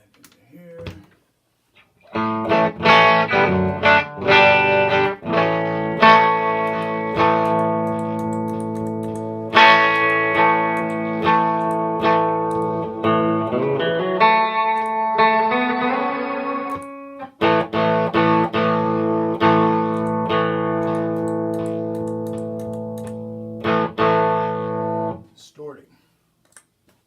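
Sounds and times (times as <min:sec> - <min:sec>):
electric guitar chords strummed: 0:02.1 - 0:25.2.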